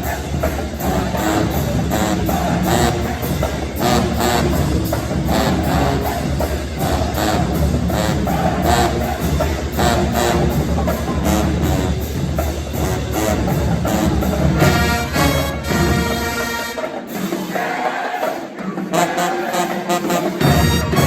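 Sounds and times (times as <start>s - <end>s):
loud music with drums: 0.0s - 21.0s.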